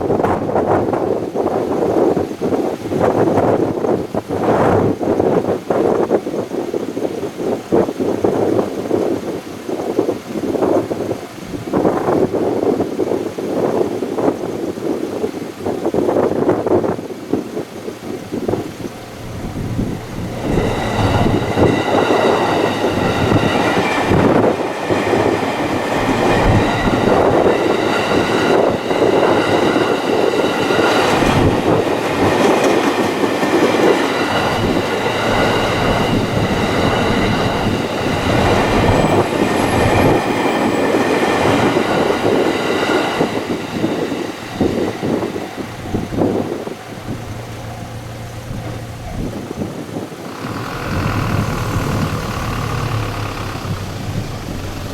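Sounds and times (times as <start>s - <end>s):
train wheels clacking on rails: 17.6s - 54.9s
high steady tones: 18.7s - 54.9s.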